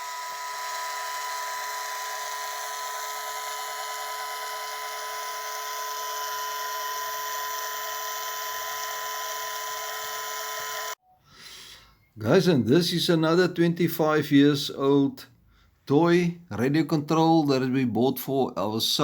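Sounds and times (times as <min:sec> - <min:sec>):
wire wheel power tool whining: 0:00.0 - 0:11.0.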